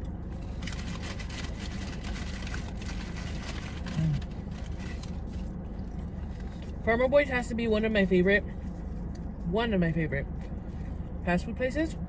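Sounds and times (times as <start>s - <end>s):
chewing and crunching fries: 0.0s - 6.9s.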